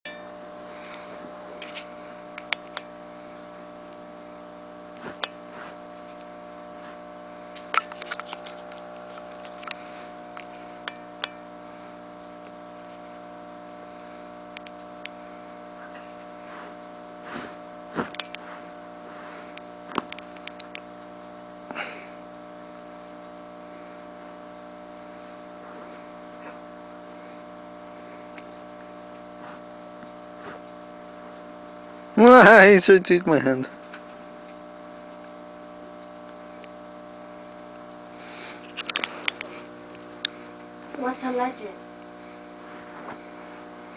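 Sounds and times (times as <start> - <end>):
steady electrical hum: 0.1 - 43.9.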